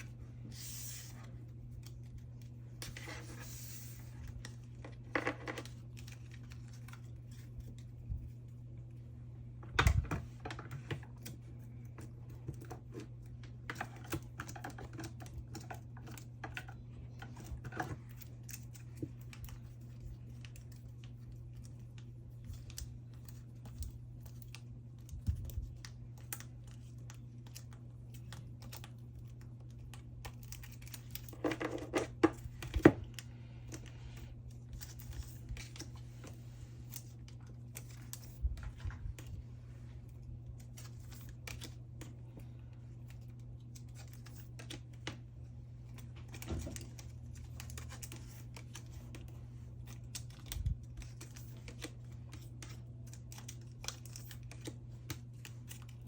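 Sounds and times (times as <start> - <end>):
steady low hum: 0.0 - 56.0
cards clicking and tapping: 40.5 - 56.0.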